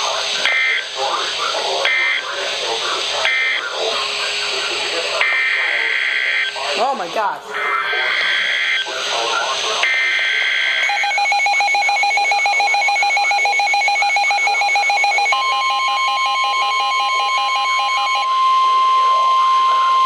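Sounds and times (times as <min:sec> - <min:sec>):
steady warning tone: 0:00.0 - 0:20.0
pulsed electronic beeping alarm: 0:00.4 - 0:00.9, 0:05.2 - 0:06.9, 0:07.8 - 0:08.9, 0:09.8 - 0:20.0
shrill data burst: 0:07.6 - 0:16.0.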